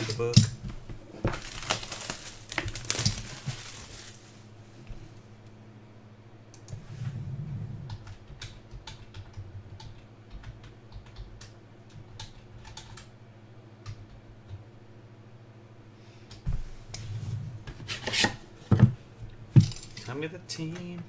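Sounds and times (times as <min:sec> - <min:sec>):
faint low hum: 0:00.0 - 0:21.0
computer keyboard clicking: 0:07.9 - 0:13.1.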